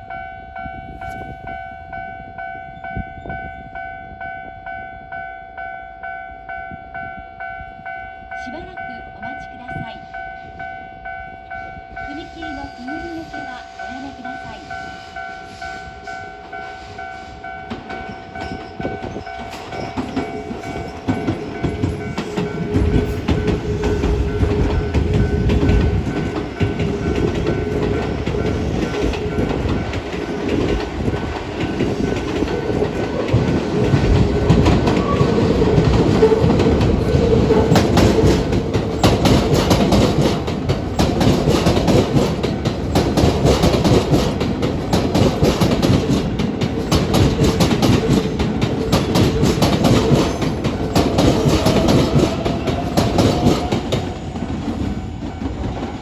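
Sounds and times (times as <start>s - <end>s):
electric train rumbling past: 0.0s - 56.0s
train wheels clacking over rail joints: 15.6s - 56.0s.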